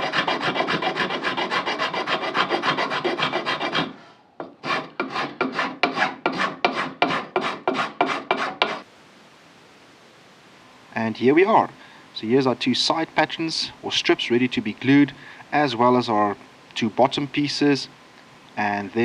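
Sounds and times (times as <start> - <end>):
hand file rasping on wood: 0.0 - 8.8.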